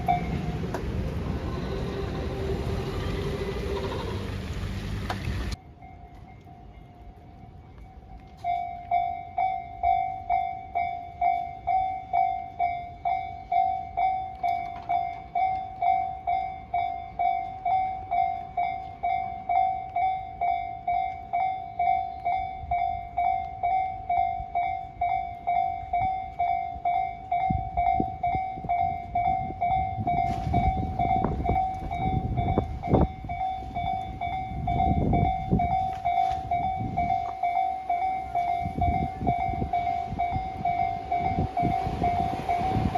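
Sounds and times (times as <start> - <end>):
level crossing bell ringing: 0.0 - 3.4, 8.2 - 42.9
wheels clicking over rails: 0.0 - 5.6
train rumbling: 0.0 - 19.6, 20.8 - 42.9.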